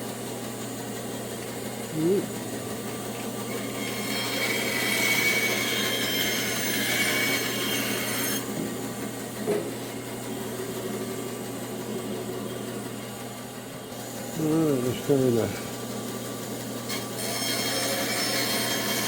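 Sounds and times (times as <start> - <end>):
bandsaw cutting wooden branch: 3.5 - 8.5, 16.9 - 19.0.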